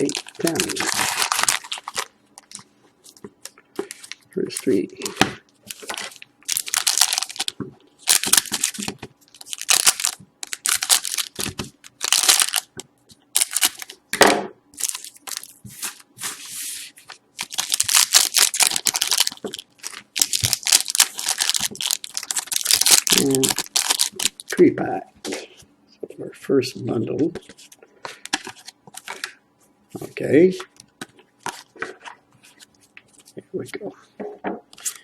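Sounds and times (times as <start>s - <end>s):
card wrappers crinkling: 0.0s - 3.2s, 3.8s - 14.0s, 14.8s - 24.6s, 30.7s - 33.3s.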